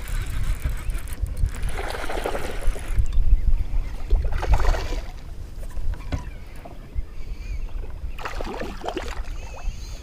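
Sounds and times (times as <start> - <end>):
wind rumbling on microphone: 0.0 - 10.0
water splashing: 8.2 - 9.6.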